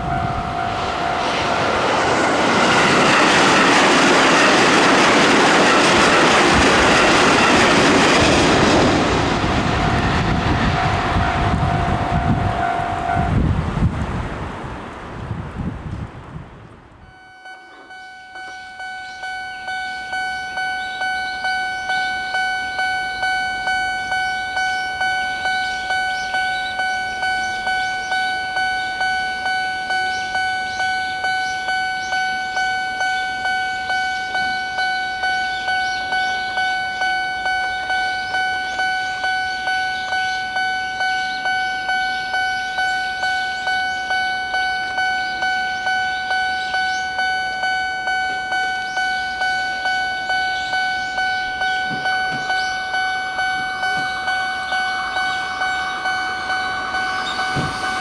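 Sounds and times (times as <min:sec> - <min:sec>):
level crossing warning bell: 0:00.0 - 0:13.5, 0:17.0 - 0:58.0.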